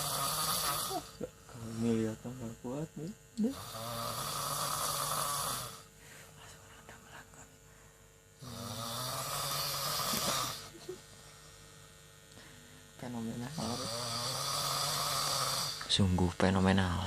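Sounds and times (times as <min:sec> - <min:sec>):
person snoring: 0:00.0 - 0:02.0, 0:03.5 - 0:05.9, 0:08.4 - 0:11.0, 0:13.4 - 0:15.9.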